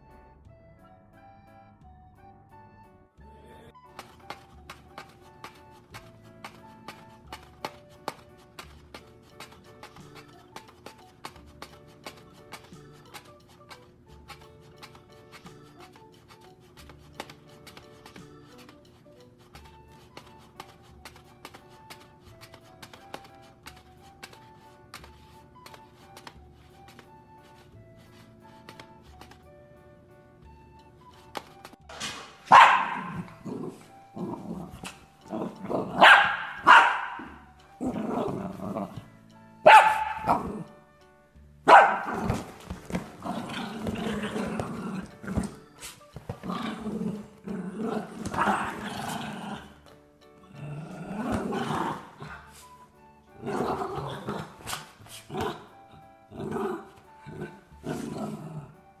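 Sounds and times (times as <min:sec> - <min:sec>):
background music: 0:00.0 - 0:59.0
dog barking: 0:32.5 - 0:33.3, 0:35.9 - 0:37.4, 0:39.6 - 0:40.6, 0:41.7 - 0:42.5
dog growling: 0:32.9 - 0:39.1, 0:42.0 - 0:49.8, 0:50.4 - 0:52.6, 0:53.4 - 0:58.9.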